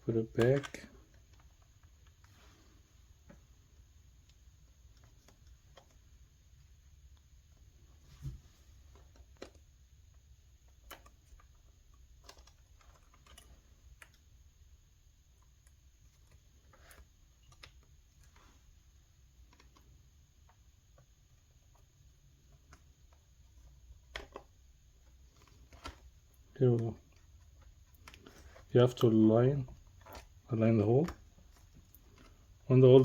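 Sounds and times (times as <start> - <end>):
low steady hum: 0.0 - 33.0
small clicks and taps: 8.8 - 14.3, 15.3 - 18.6, 19.4 - 28.7.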